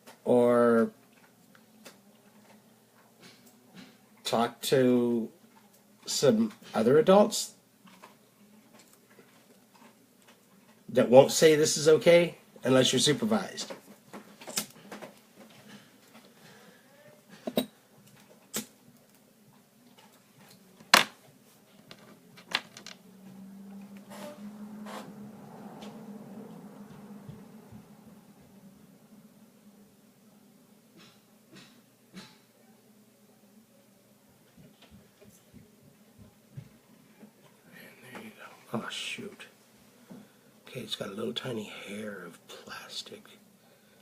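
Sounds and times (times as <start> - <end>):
low steady hum: 0.0 - 44.0.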